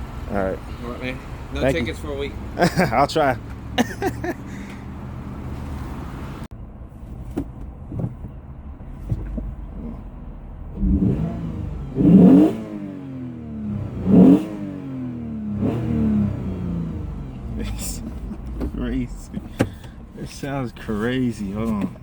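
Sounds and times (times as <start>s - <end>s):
car engine idling and revving: 0.0s - 22.0s.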